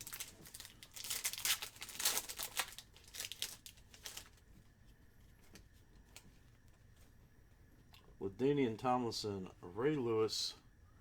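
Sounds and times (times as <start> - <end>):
plastic wrapper crinkling and tearing: 0.0 - 4.4.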